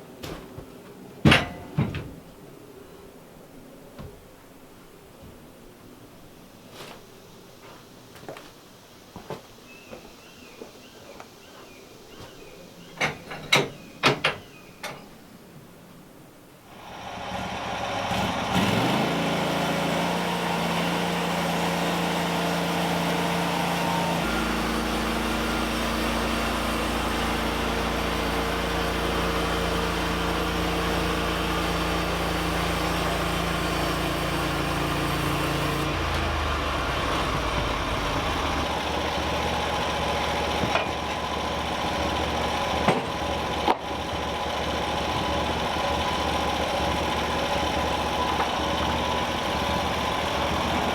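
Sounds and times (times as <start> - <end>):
gas engine running: 16.7 - 50.9.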